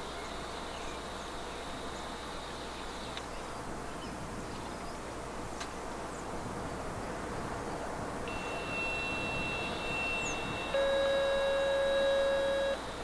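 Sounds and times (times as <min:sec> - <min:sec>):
louder lower electronic tone: 0:08.3 - 0:12.9
faint high electronic tone: 0:08.3 - 0:13.0.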